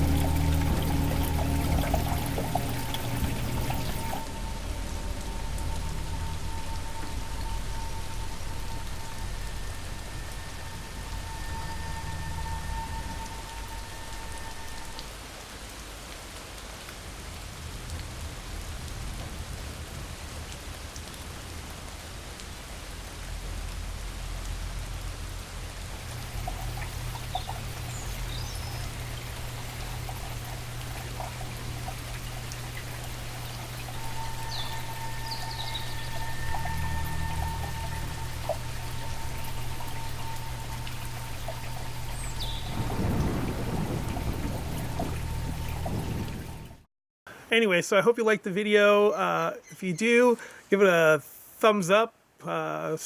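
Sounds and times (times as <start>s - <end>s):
steady tone: 0.0s - 15.0s, 26.0s - 46.8s
low hum: 0.0s - 15.4s, 23.3s - 46.9s
falling water patter and splash: 0.0s - 46.9s.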